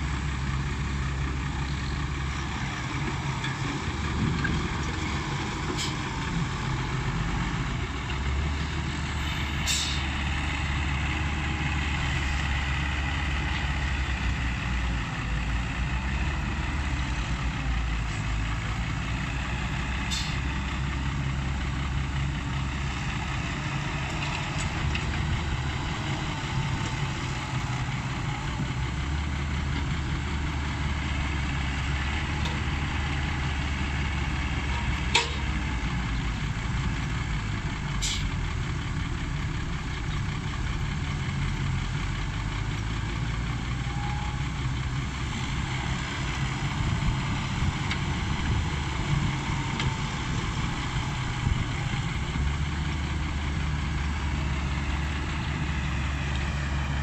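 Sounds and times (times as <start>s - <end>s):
excavator diesel engine rumbling: 0.0s - 57.0s.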